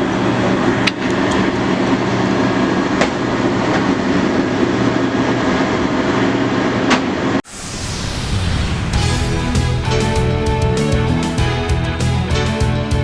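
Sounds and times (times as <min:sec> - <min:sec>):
truck engine rumbling: 0:07.5 - 0:13.0.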